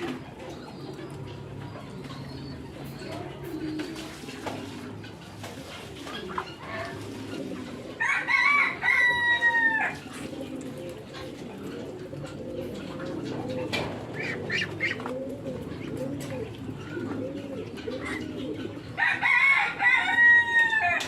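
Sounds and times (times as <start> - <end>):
pigeons cooing: 0.0 - 21.0
rooster crowing: 8.0 - 10.0, 19.0 - 21.0.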